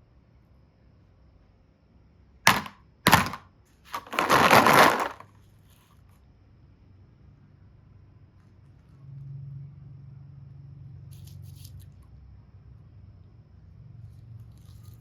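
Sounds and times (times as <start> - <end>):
crackling of breaking: 4.0 - 5.3.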